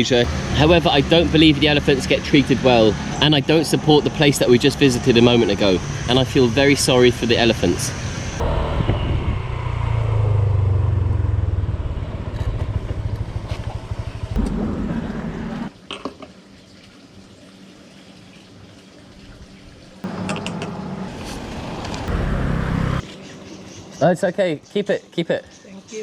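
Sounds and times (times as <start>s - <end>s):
motor scooter engine rumble: 0.0s - 15.7s.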